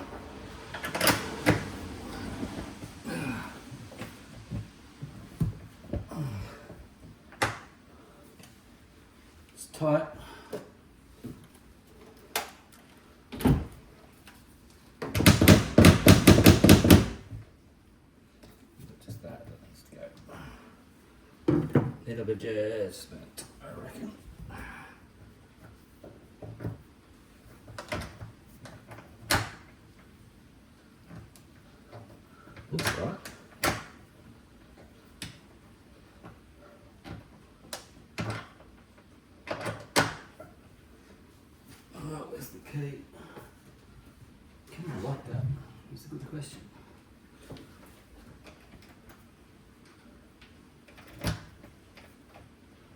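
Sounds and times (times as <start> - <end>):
tool knocking on window lock: 15.1 - 17.2.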